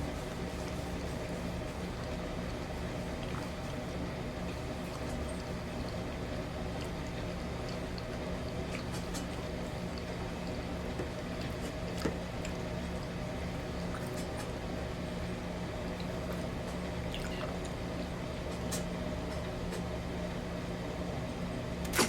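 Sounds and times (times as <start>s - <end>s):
steady low hum: 0.0s - 22.0s
wet chewing mouth sounds: 1.7s - 14.5s, 16.0s - 17.8s.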